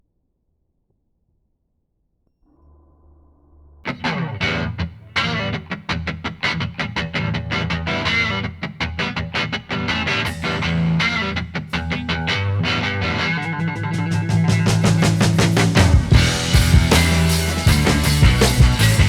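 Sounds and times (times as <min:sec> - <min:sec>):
guitar picking notes: 0:03.9 - 0:19.0
steady low bass line: 0:10.2 - 0:19.0.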